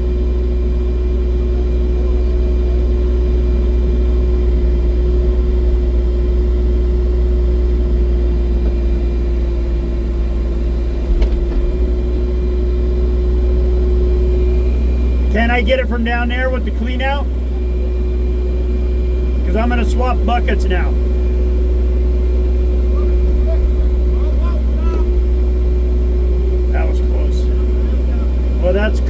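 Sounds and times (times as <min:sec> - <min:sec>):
excavator diesel engine running: 0:00.0 - 0:29.0
short knock: 0:11.0 - 0:12.2.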